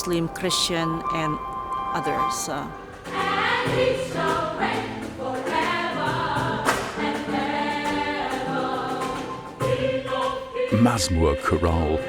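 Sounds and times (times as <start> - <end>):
choir singing in harmony: 0.0 - 12.0.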